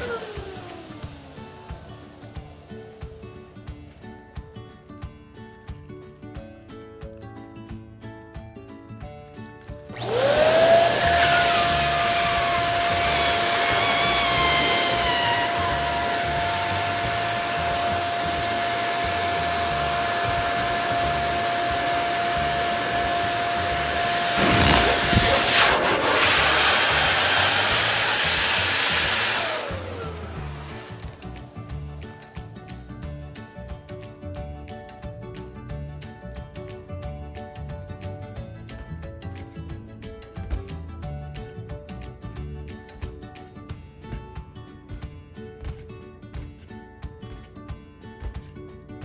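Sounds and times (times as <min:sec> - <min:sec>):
electric pump whining: 0:00.0 - 0:03.9, 0:09.9 - 0:32.5
burst of noise: 0:24.1 - 0:31.2.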